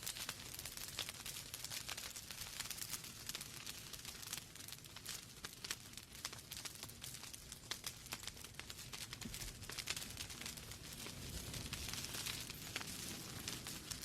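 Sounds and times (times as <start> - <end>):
low rush of flames: 0.0 - 14.0
wood fire crackling and popping: 0.0 - 14.0.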